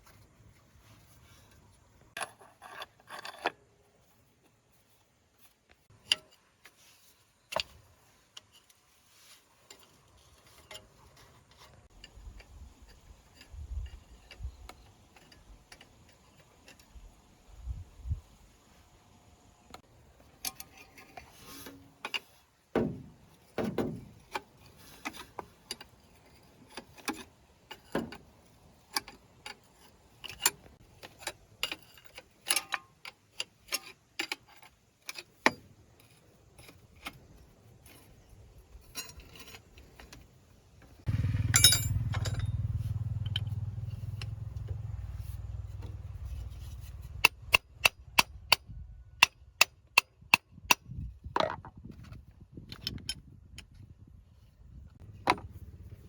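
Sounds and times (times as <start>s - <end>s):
metal tools clinking: 41.2s - 43.4s.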